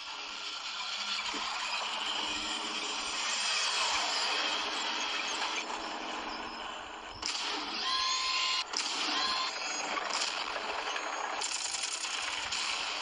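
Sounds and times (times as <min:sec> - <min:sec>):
toy tank gear motors whirring: 0:07.8 - 0:13.0.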